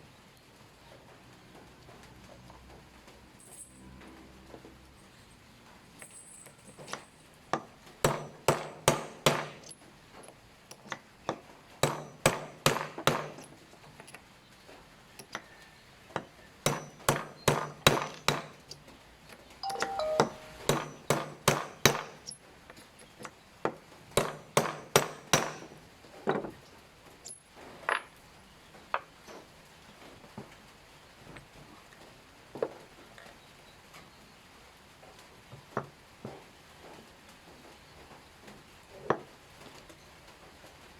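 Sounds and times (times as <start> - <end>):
metallic taps and clinks: 6.0 - 7.3.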